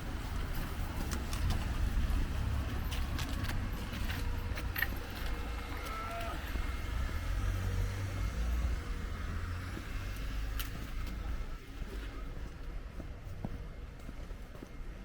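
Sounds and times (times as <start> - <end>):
low street rumble: 0.0 - 15.0.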